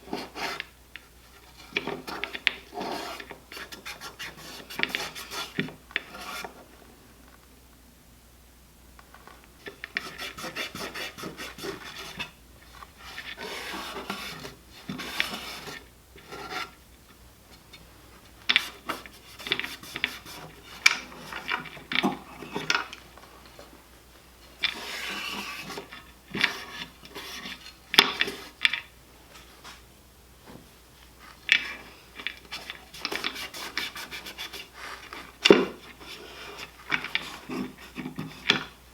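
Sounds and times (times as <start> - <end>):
scrubbing and scraping strokes: 9.9 - 16.8.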